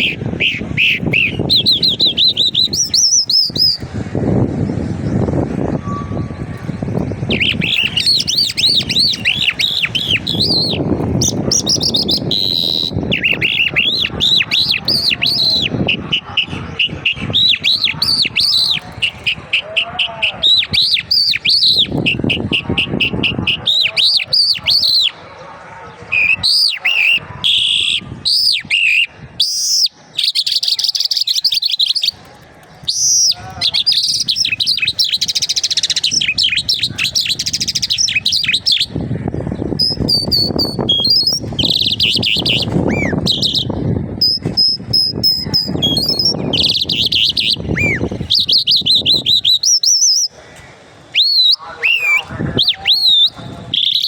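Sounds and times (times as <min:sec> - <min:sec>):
low rumbling noise: 0:00.0 - 0:19.5
songbird singing: 0:00.0 - 0:54.0.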